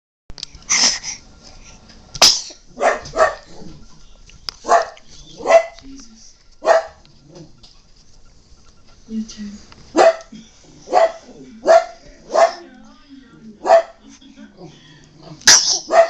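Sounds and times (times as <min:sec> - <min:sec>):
dog barking: 0:02.7 - 0:03.7, 0:04.6 - 0:05.8, 0:06.6 - 0:07.0, 0:09.9 - 0:10.3, 0:10.9 - 0:12.6, 0:13.6 - 0:14.0, 0:15.5 - 0:16.0.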